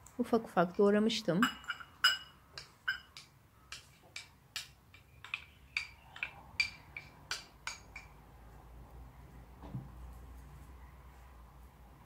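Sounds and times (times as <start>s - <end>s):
spoon clinking against container: 1.4s - 8.2s.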